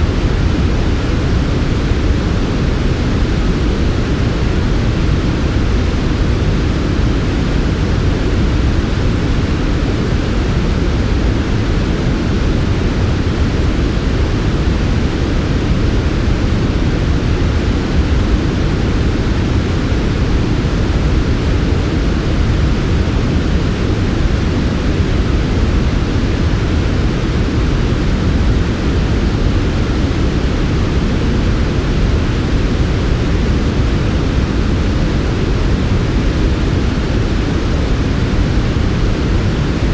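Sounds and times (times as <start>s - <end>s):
steady white noise hiss: 0.0s - 39.9s.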